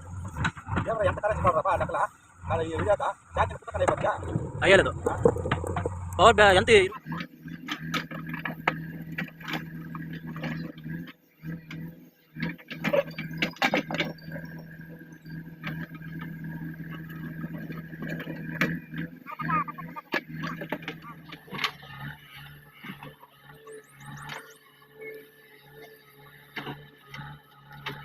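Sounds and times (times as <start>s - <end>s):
diesel engine running: 0.0s - 28.0s
knocks and clatter: 3.8s - 6.8s.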